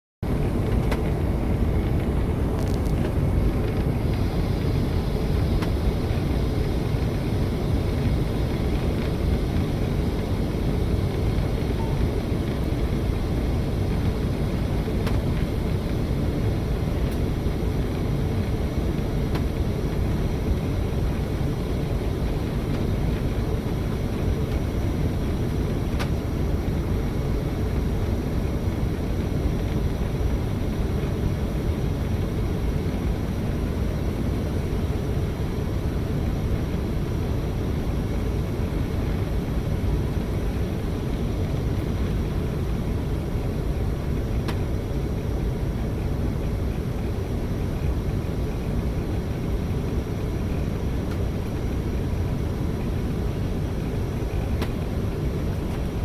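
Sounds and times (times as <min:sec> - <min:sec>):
jet cabin rumble: 0:00.2 - 0:56.0
faint steady tone: 0:04.3 - 0:13.3.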